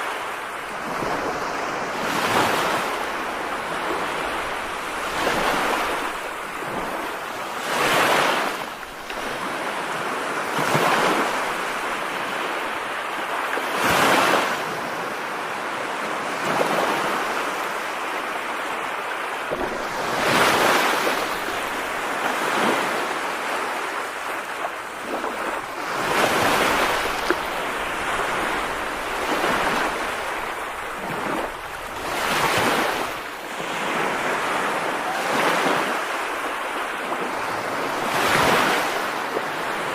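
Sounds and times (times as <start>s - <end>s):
rushing water surging: 19.2s - 22.4s, 23.0s - 39.9s.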